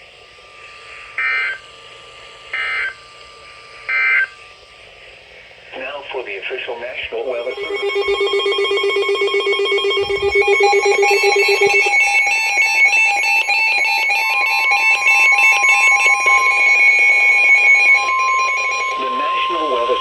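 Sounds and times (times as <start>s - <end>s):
steady warning alarm tone: 0.0s - 5.0s, 7.1s - 20.0s
warbling digital data bursts: 7.4s - 20.0s.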